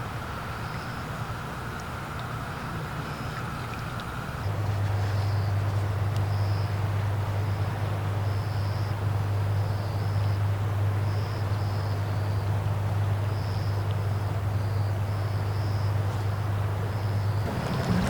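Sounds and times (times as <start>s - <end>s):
low engine drone: 17.2s - 18.0s.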